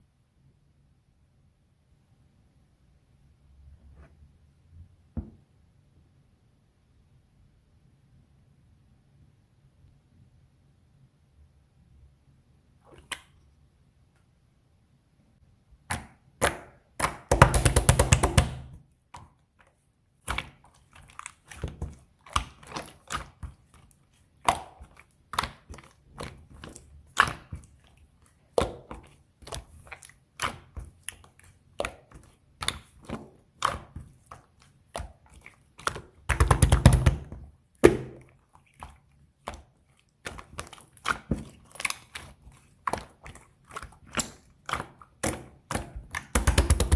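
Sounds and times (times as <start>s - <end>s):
slime squished by hand: 15.8s - 46.9s
rapid sticky popping: 15.9s - 46.9s.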